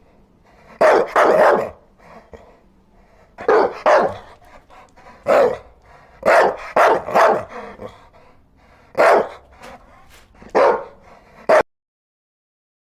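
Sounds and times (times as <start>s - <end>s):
dog barking: 0.7s - 1.9s, 3.4s - 8.0s, 8.9s - 11.6s.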